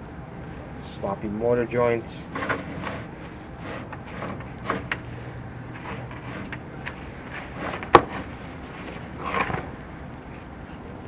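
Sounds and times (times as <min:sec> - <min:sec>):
camera gear scraping and rubbing: 0:02.2 - 0:09.9.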